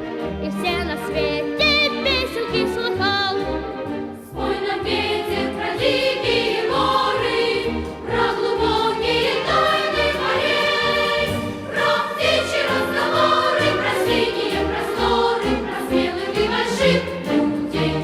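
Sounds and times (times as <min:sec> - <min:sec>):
choir singing: 0:04.0 - 0:18.0.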